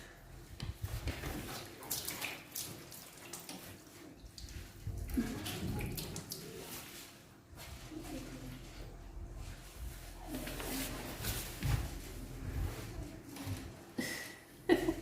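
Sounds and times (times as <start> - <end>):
water splashing and running: 0.7 - 7.3.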